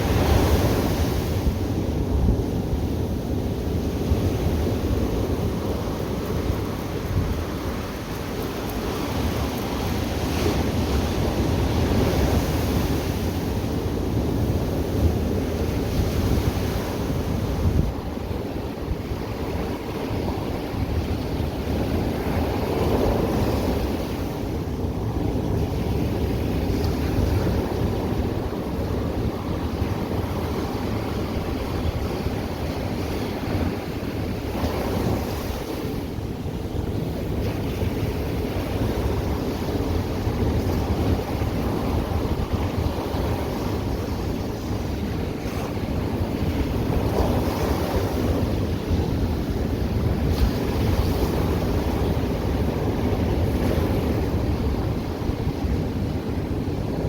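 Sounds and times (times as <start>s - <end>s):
ocean surf breaking: 0.0s - 24.8s
wind buffeting microphone: 0.0s - 57.0s.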